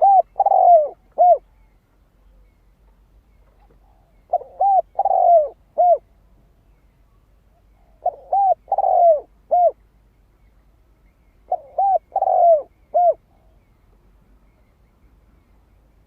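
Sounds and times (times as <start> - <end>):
dove cooing: 0.0 - 1.6, 3.6 - 6.1, 7.8 - 9.8, 11.5 - 13.6.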